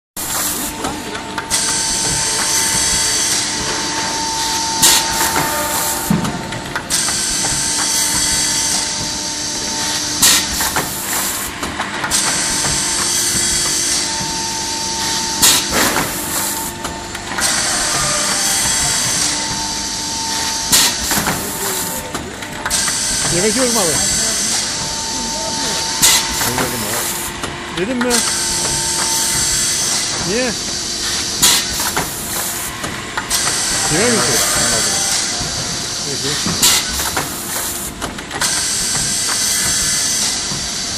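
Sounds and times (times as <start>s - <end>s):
steady motor hum: 0.2s - 40.9s
sharp machine clunk: 15.4s - 19.5s, 26.0s - 30.4s.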